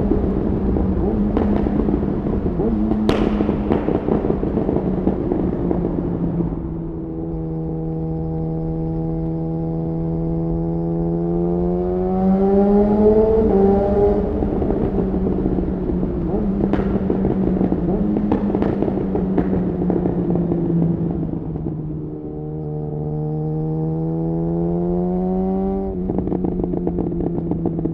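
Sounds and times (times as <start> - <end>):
exhaust pops: 0.0 - 6.8, 14.2 - 22.0
motorcycle engine idling and revving: 0.0 - 27.9.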